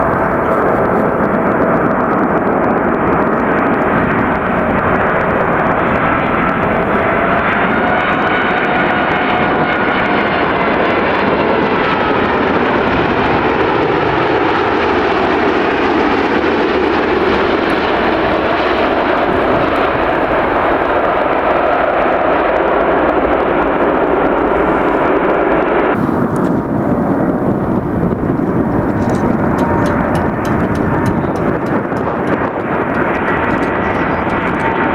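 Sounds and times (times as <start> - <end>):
jet engines running: 0.0 - 34.9.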